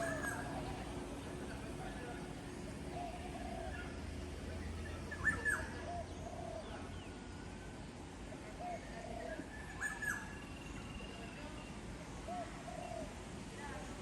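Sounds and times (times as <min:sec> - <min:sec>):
bird cooing: 0:00.0 - 0:00.9.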